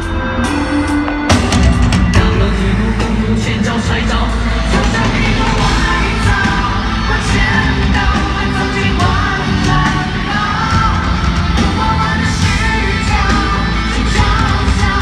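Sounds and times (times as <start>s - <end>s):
live pop-rock band: 0.0s - 15.0s
person singing: 0.0s - 15.0s
crowd yelling: 3.7s - 15.0s.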